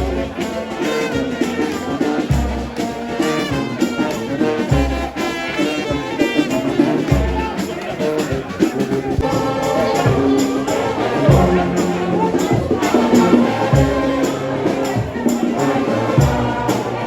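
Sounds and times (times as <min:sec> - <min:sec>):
upbeat brass music: 0:00.0 - 0:17.0.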